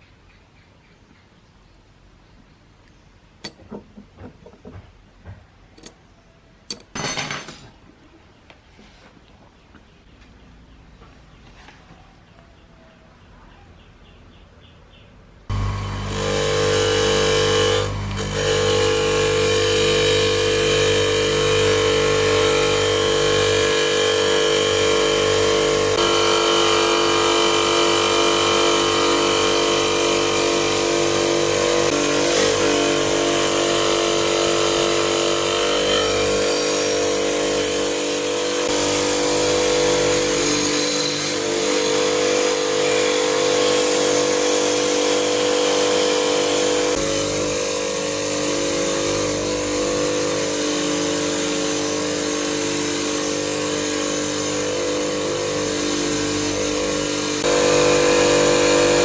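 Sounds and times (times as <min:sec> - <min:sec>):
small electric power tool running: 0:15.5 - 0:59.0.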